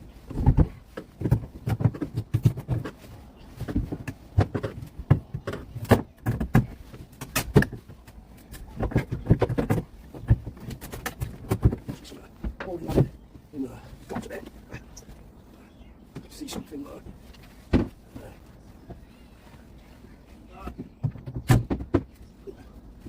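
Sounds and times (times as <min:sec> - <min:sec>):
timber knocking and rattling: 0:00.2 - 0:13.2.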